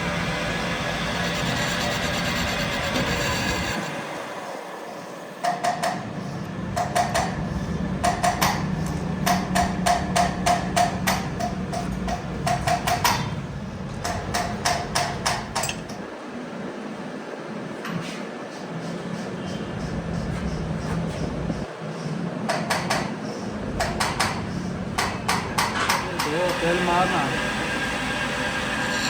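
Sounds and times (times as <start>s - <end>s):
low machine hum: 0.0s - 17.8s, 18.8s - 21.8s, 23.2s - 29.0s
hammer striking metal: 6.8s - 7.4s, 8.0s - 16.0s, 22.5s - 26.7s.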